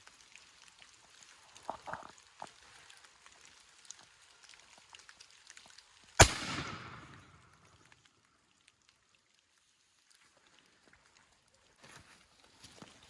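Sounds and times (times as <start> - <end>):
faint crackling with ticks: 0.0 - 6.2, 6.8 - 13.0
loud sharp bang: 6.2 - 7.2.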